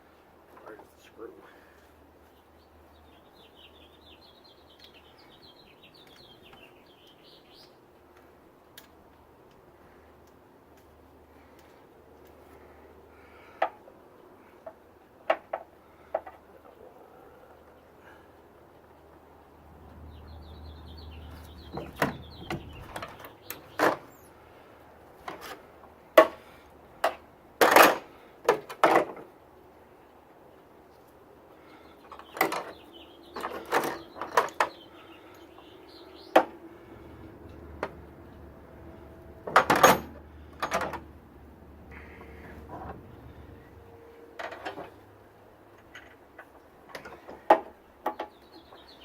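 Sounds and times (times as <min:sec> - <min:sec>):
small bird chirping: 0:19.9 - 0:24.3
metal tools clinking and knocking: 0:39.4 - 0:41.0.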